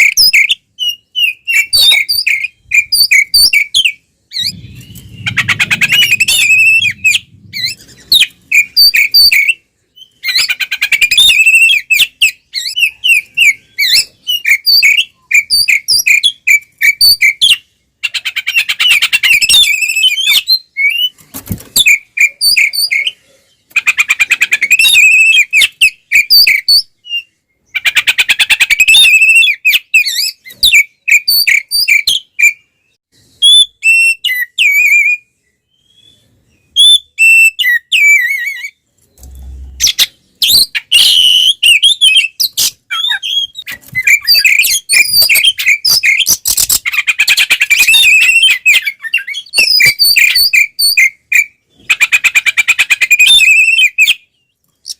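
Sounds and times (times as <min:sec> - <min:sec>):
bird song whistles and chirps: 0:00.0 - 0:54.9.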